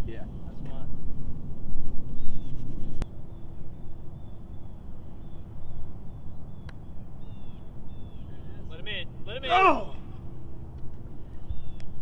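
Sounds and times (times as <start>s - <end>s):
wind rumble on microphone: 0.0s - 8.4s
faint bird chirps: 2.2s - 8.6s.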